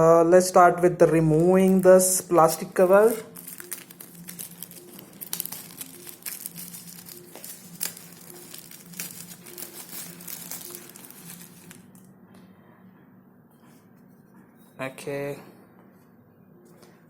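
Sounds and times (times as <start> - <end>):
plastic shrink-wrap tearing: 2.5 - 12.0.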